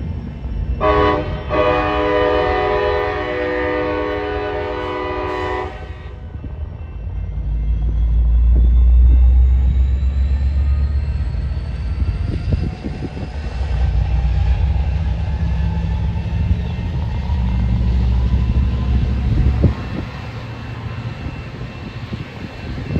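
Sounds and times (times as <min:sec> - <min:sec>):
high locomotive whine: 0:00.0 - 0:22.9
train rumbling past: 0:00.0 - 0:22.9.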